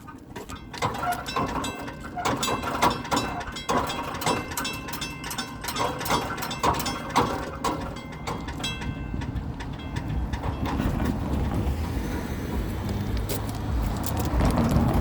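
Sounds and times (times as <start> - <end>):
railroad crossing bell ringing: 0.4 - 11.5.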